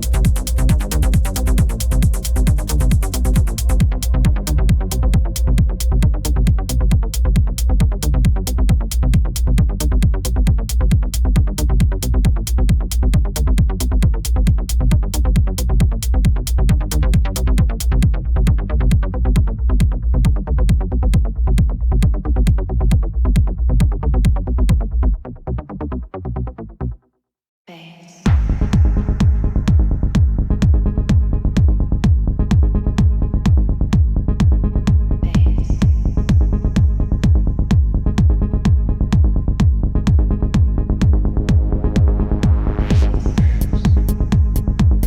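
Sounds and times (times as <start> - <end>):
techno trance music: 0.0 - 18.1, 28.3 - 45.0.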